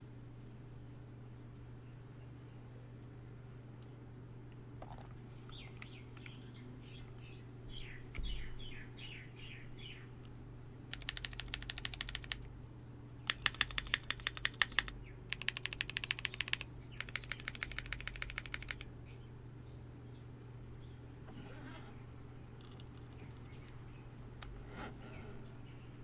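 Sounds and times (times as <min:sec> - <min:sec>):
birds chirping: 0:05.4 - 0:10.2, 0:23.0 - 0:24.2
mechanical keyboard typing: 0:10.9 - 0:12.5, 0:13.2 - 0:18.9, 0:22.6 - 0:23.4.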